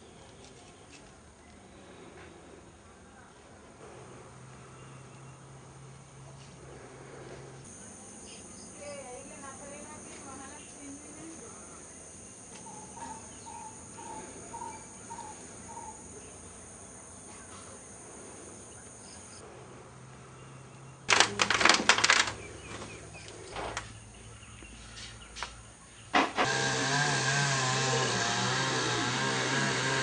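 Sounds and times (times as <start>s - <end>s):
bird chirps: 12.6s - 16.3s
chainsaw running: 26.2s - 30.0s.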